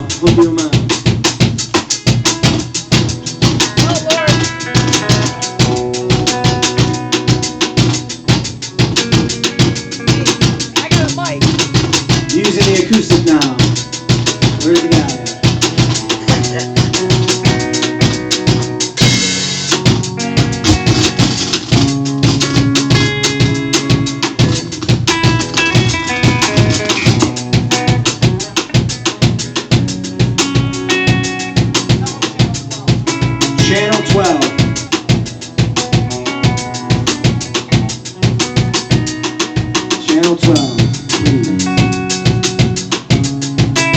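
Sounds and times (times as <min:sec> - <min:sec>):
drum kit fast beat: 0:00.0 - 0:43.9
live band playing: 0:00.0 - 0:43.9.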